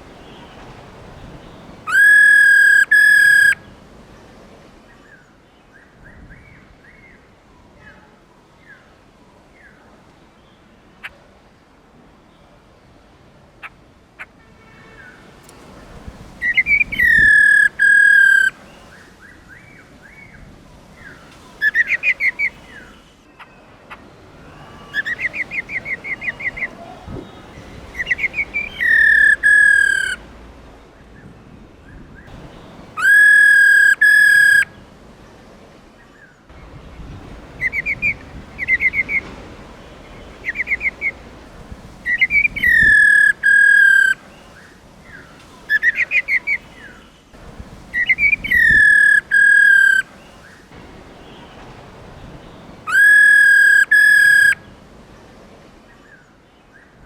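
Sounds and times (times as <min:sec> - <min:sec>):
bird chirps and whistles: 0:01.9 - 0:03.6, 0:16.4 - 0:18.5, 0:28.0 - 0:30.2, 0:33.0 - 0:34.7, 0:37.6 - 0:39.2, 0:42.1 - 0:44.2, 0:48.0 - 0:50.0, 0:52.9 - 0:54.6.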